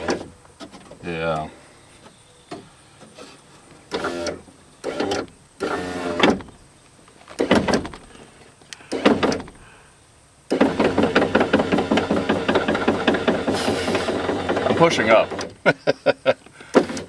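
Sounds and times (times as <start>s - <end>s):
power window motor clicking: 3.9s - 6.6s, 7.4s - 8.2s, 8.8s - 9.6s, 10.5s - 15.6s, 16.7s - 17.0s.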